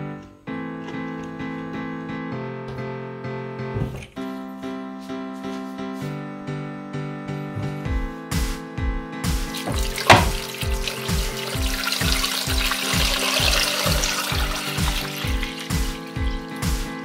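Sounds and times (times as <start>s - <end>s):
electronic music with kick drum: 7.5s - 17.0s
rushing water-like noise: 9.5s - 16.9s.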